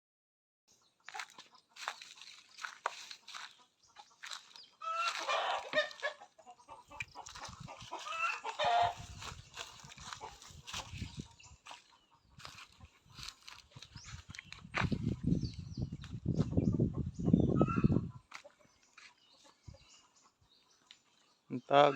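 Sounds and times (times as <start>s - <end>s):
chickens clucking: 0.7s - 21.9s
chicken loud calls: 4.2s - 10.6s.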